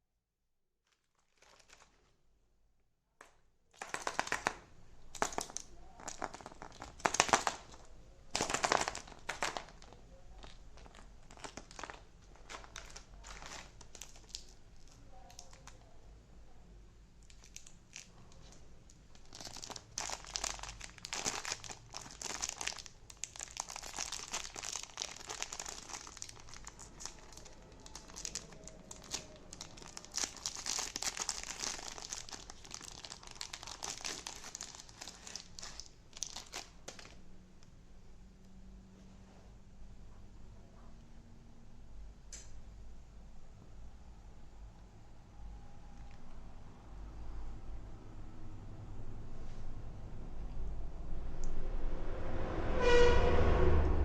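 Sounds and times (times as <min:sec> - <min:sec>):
wrappers crinkling and tearing: 0:00.8 - 0:02.2, 0:03.8 - 0:15.9, 0:17.2 - 0:37.2.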